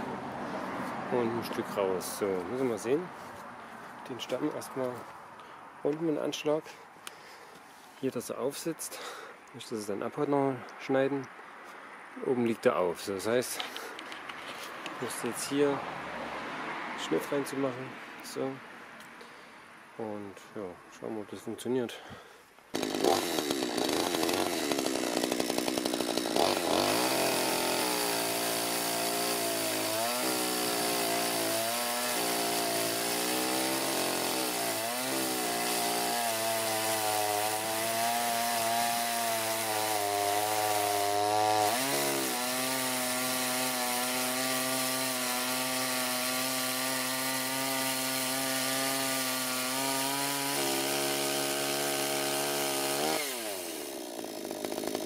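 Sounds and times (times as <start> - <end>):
chainsaw cutting log: 22.7 - 55.0.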